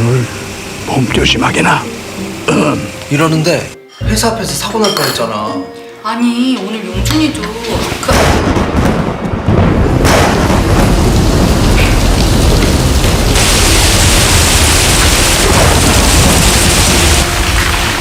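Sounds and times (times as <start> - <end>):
heavy rain: 0.0 - 3.4, 7.7 - 18.0
rolling thunder rumble: 7.8 - 18.0.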